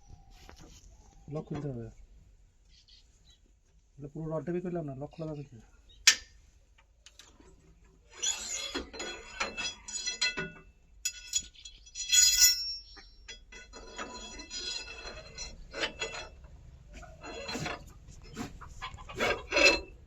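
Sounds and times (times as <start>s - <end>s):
hand tools clinking on metal: 8.2s - 18.4s, 19.1s - 20.0s.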